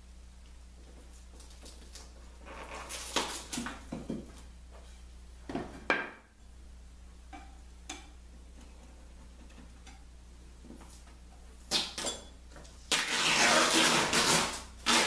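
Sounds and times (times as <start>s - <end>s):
steady low hum: 3.6s - 12.9s.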